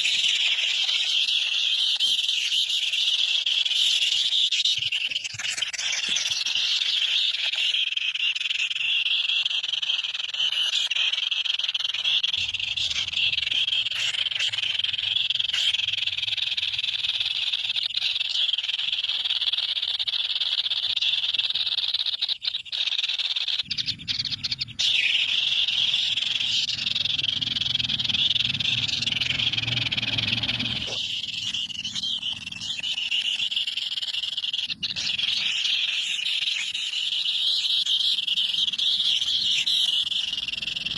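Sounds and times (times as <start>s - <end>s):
high-pitched animal chirping: 0.0s - 40.9s
low hum: 23.7s - 32.7s.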